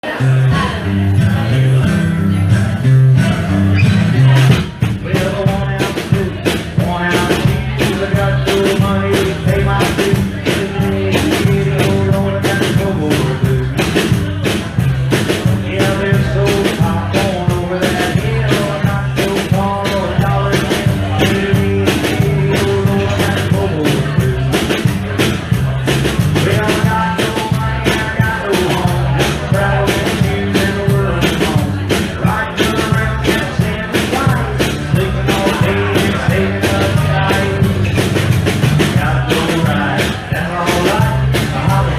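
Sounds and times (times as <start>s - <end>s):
drums steady beat: 0.0s - 41.9s
live blues-rock band playing: 0.0s - 41.9s.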